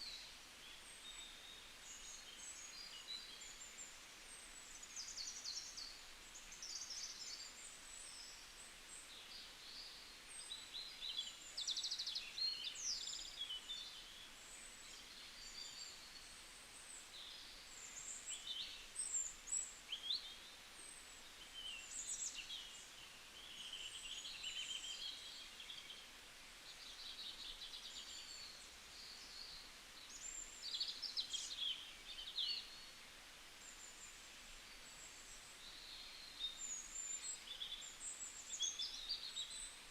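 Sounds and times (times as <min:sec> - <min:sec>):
faint background hiss: 0:00.0 - 0:39.9.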